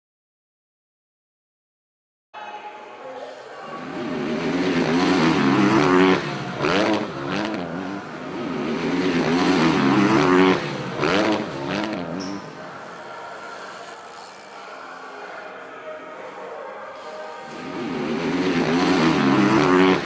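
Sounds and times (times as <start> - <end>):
car engine revving: 3.8 - 13.0, 17.5 - 20.0.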